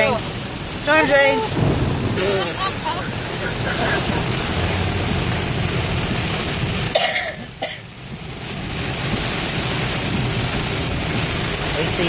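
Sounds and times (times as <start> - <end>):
heavy rain on car: 0.0 - 12.0
tyres on wet road: 0.0 - 12.0
person coughing: 6.9 - 7.8.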